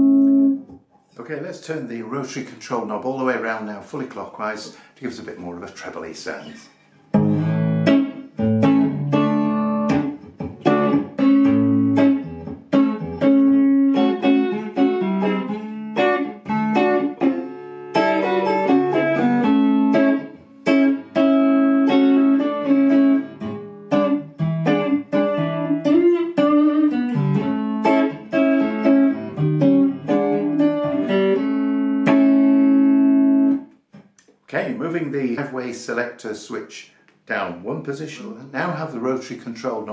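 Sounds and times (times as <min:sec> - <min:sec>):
electric guitar playing notes and chords: 0:00.0 - 0:00.8, 0:07.1 - 0:34.0.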